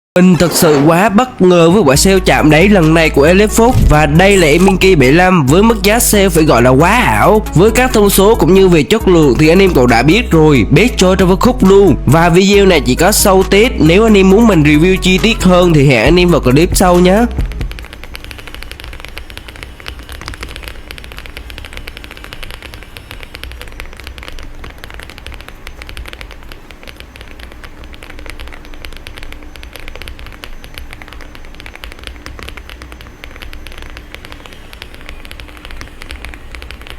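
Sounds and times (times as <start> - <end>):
rapid mechanical keyboard typing: 0.4 - 36.9.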